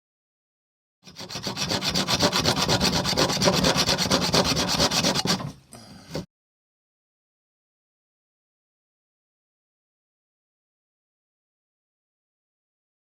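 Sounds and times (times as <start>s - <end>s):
hand saw sawing wood: 1.0s - 6.3s.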